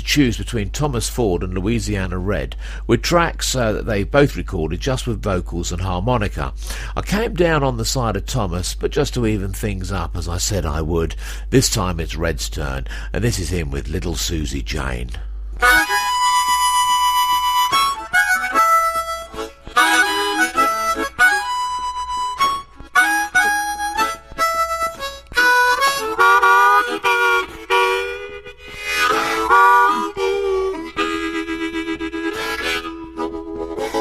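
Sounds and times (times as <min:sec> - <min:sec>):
blues harmonica: 0:06.6 - 0:07.0, 0:15.2 - 0:34.0.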